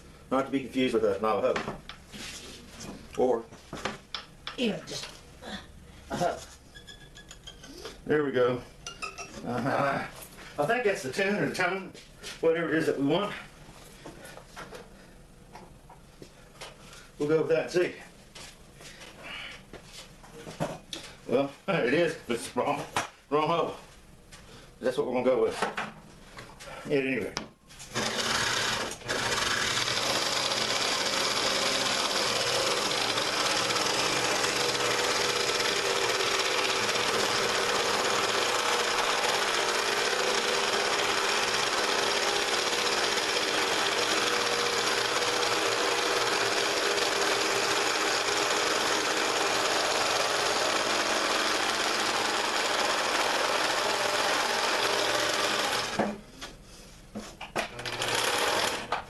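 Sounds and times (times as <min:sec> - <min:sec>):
scroll saw running: 0:27.9 - 0:56.0, 0:57.8 - 0:59.0.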